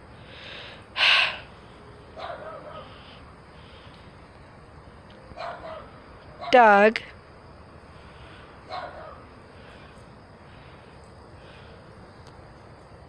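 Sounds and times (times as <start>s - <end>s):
dog barking: 2.2s - 2.9s, 5.4s - 6.5s, 8.7s - 9.2s.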